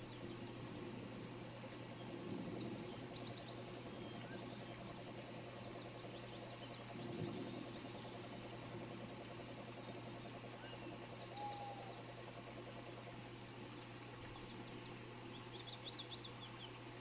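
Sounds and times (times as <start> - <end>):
rain hiss: 0.0 - 17.0
small birds chirping: 14.2 - 16.9.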